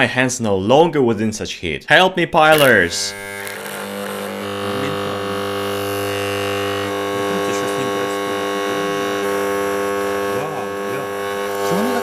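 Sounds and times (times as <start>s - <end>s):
transformer humming: 2.6s - 12.0s.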